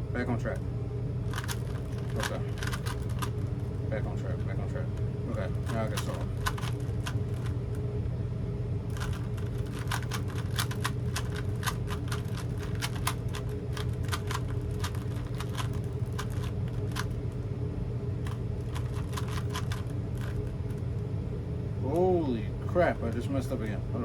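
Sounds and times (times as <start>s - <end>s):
steady low hum: 0.0s - 24.0s
puzzle cube clicking: 1.3s - 3.3s, 9.0s - 17.1s, 18.3s - 20.4s.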